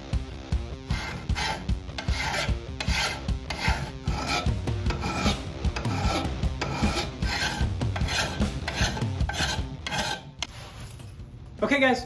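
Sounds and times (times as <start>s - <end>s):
file rasping on steel blade: 0.9s - 10.3s.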